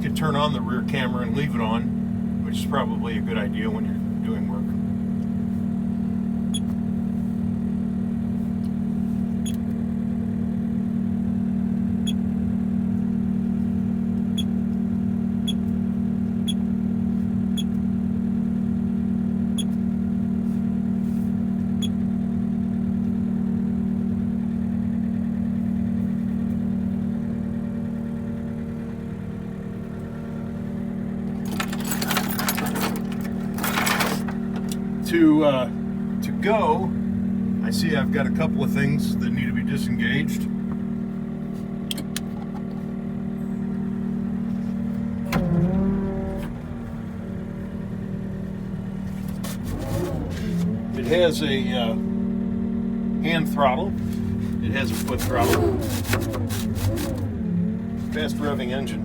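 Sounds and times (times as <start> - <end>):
diesel engine idling: 0.0 - 59.0
clicking and rattling: 31.3 - 34.8.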